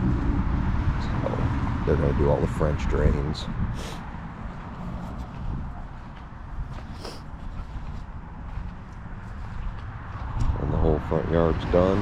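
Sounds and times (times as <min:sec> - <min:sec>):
footsteps on dirt: 0:04.4 - 0:11.0.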